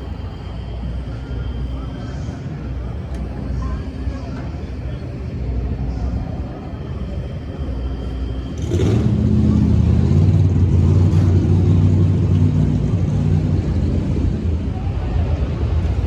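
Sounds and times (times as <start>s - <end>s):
engine starting and running: 8.6s - 14.0s.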